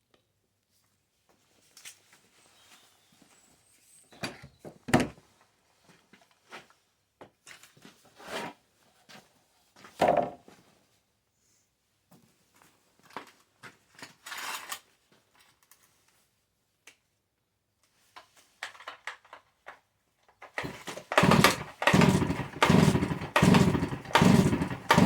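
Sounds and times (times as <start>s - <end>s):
recoil starter cord rattling: 20.4s - 25.0s.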